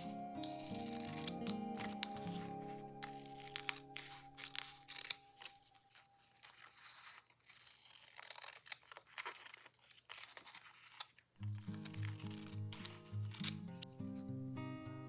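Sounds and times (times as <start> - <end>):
background music: 0.0 - 6.0, 11.5 - 15.0
paper crinkling and rustling: 0.0 - 14.2
paper tearing: 0.0 - 14.2.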